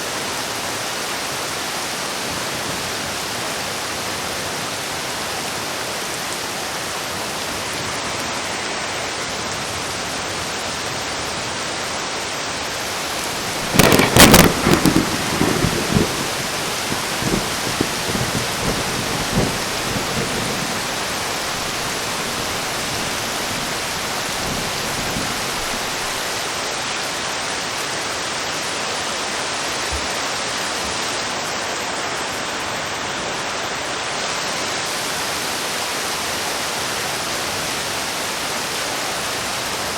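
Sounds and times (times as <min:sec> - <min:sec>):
heavy rain: 0:00.0 - 0:39.9
thunder: 0:13.4 - 0:21.4.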